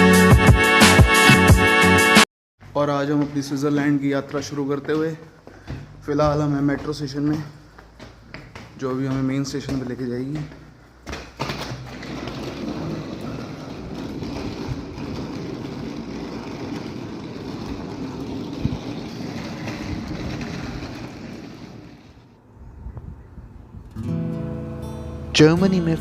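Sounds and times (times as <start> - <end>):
metro train rumbling: 12.7 - 22.2.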